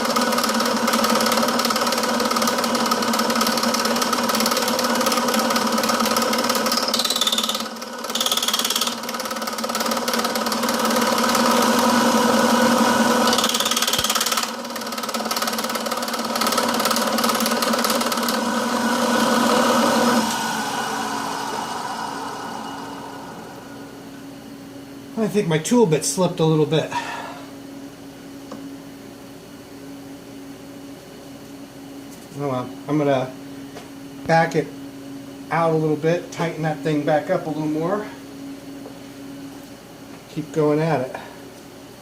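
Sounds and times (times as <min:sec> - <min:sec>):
milling machine motor hum: 0:00.0 - 0:25.5
tool bit cutting metal hiss: 0:06.7 - 0:09.0, 0:13.3 - 0:14.5.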